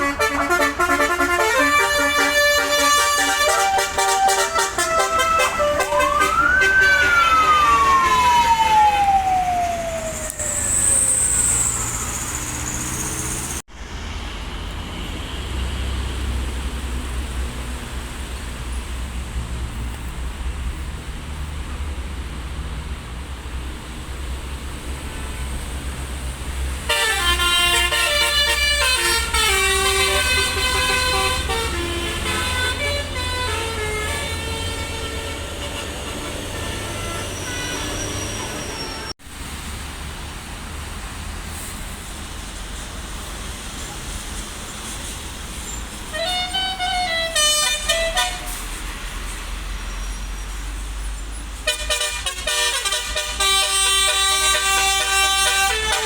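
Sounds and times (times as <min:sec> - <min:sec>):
multi-note horn melody: 0:00.0 - 0:08.3, 0:26.9 - 0:39.1, 0:51.7 - 0:56.0
bus engine rumble: 0:00.0 - 0:56.0
siren-like wail falling in pitch: 0:02.1 - 0:12.7.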